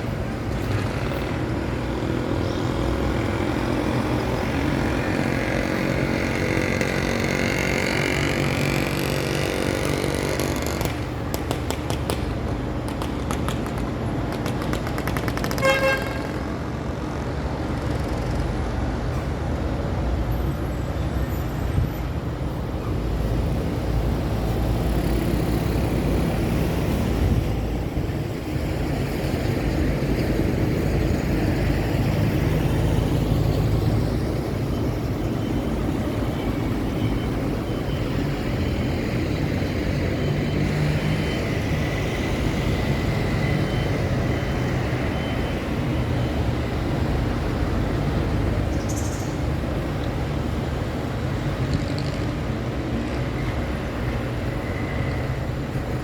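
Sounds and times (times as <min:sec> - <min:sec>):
road traffic rumbling: 0:00.0 - 0:56.0
car horn toot: 0:15.6 - 0:16.3.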